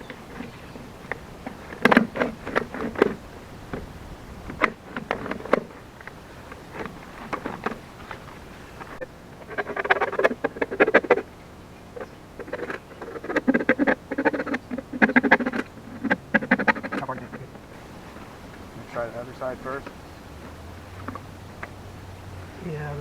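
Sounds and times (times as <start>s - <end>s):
scraping and clicking on plastic pipe: 0.0s - 21.8s.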